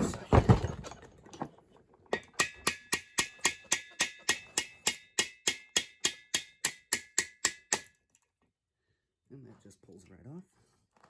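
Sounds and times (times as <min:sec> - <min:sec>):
hammer tapping on metal: 0:02.2 - 0:08.0.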